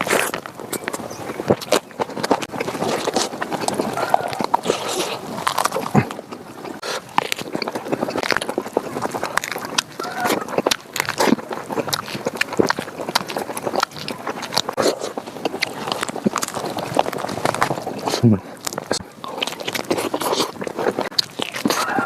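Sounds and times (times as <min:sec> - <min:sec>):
wet chewing: 0:00.0 - 0:22.0.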